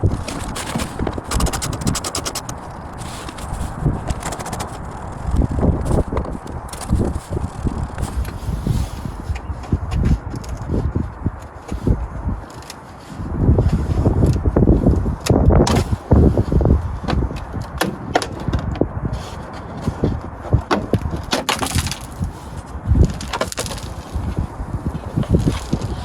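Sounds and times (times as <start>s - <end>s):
rusted metal cracking and snapping: 20.5s - 22.3s, 23.1s - 24.1s.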